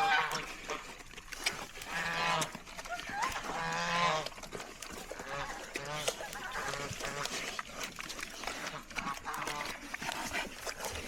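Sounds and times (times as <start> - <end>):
geese honking: 0.0 - 0.5, 1.9 - 2.5, 3.5 - 4.3.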